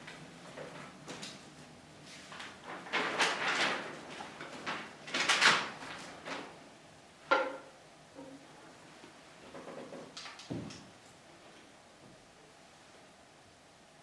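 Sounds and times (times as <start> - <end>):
rustling and handling noises: 0.0 - 6.6.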